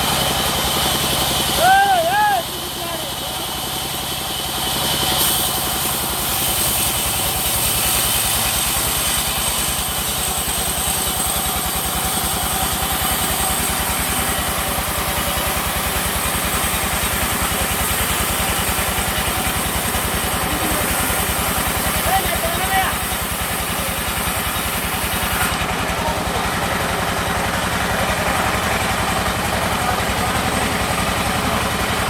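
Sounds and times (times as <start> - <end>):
high machine whine: 0.0 - 32.0
sawmill engine pulsing: 0.0 - 32.0.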